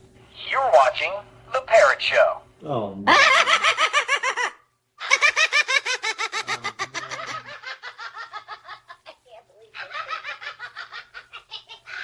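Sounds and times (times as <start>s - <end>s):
parrot laughing: 3.1s - 12.0s.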